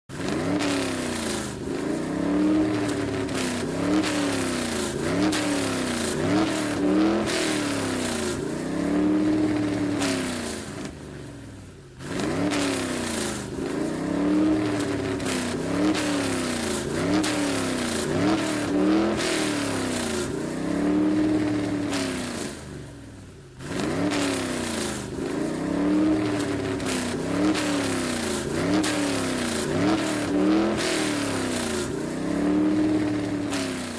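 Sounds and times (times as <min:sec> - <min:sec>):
car engine revving: 0:00.1 - 0:33.9.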